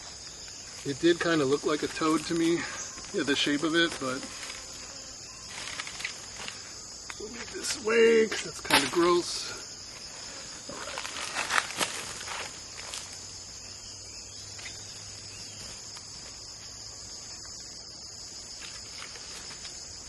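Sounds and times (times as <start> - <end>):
crickets and insects chirping: 0.0 - 20.0
footsteps in dry leaves: 10.6 - 13.2.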